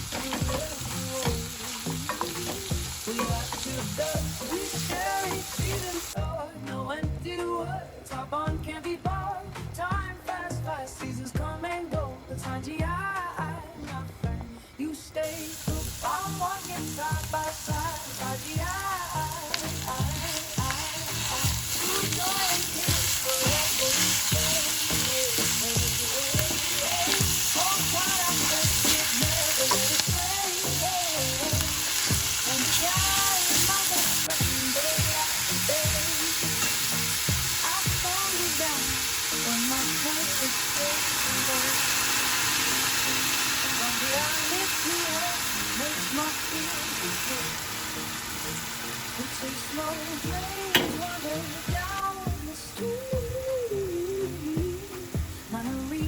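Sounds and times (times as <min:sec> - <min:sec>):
meat sizzling in a pan: 0:00.0 - 0:06.2, 0:15.2 - 0:52.4
background music: 0:00.0 - 0:56.0.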